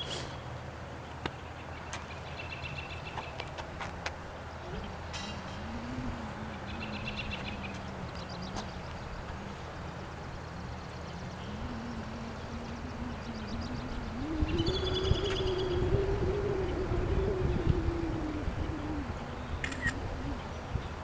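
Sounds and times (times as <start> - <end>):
wind buffeting microphone: 1.7 - 21.0
high bird trills: 4.4 - 21.0.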